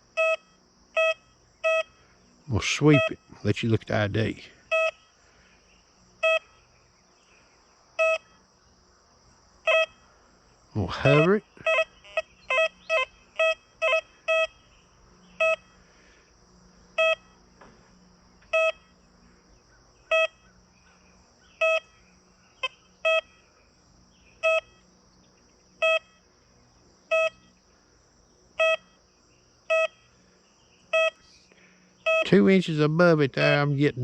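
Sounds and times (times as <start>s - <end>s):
metal detector high-pitched beep: 0.2s - 1.9s, 2.9s - 3.2s, 4.7s - 5.0s, 6.2s - 6.5s, 8.0s - 8.4s, 9.7s - 10.0s, 11.1s - 14.6s, 15.4s - 15.6s, 17.0s - 17.3s, 18.6s - 18.9s, 20.1s - 20.4s, 23.0s - 23.3s, 24.4s - 24.8s, 25.8s - 26.2s, 27.1s - 27.5s, 28.6s - 29.0s, 29.7s - 30.0s, 31.0s - 31.2s, 32.0s - 32.3s.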